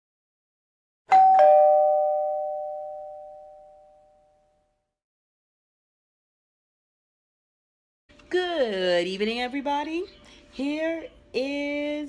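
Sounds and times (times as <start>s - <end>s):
two-note chime doorbell: 1.1s - 4.7s.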